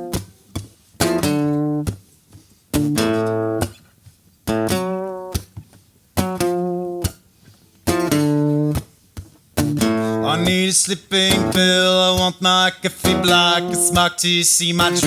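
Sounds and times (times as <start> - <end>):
acoustic guitar strumming chords: 0.0 - 2.1, 2.7 - 3.8, 4.5 - 5.6, 6.2 - 7.2, 7.8 - 9.0, 9.6 - 15.0.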